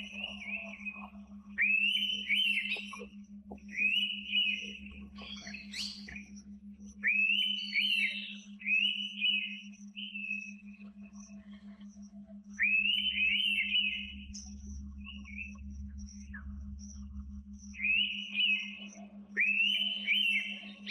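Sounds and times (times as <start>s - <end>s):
bird chirps: 0.0s - 11.4s, 12.6s - 20.9s
bird whistling: 1.6s - 3.1s, 3.7s - 6.4s, 7.0s - 10.6s, 12.6s - 14.2s, 17.8s - 20.9s.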